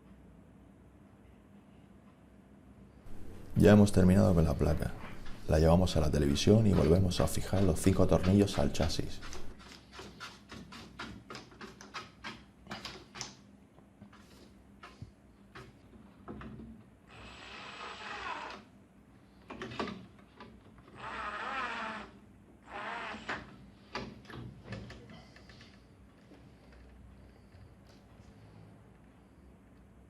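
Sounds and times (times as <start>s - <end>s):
power screwdriver whirring: 17.1s - 18.6s, 21.0s - 22.1s, 22.7s - 23.5s.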